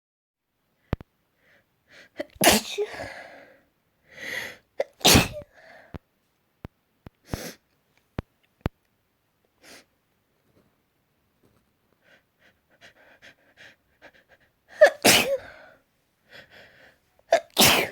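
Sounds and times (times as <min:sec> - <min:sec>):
woman sneezing: 0:02.2 - 0:03.4, 0:04.8 - 0:05.4, 0:14.8 - 0:15.6, 0:17.3 - 0:17.9
short breaths in: 0:02.8 - 0:04.7, 0:12.0 - 0:17.0.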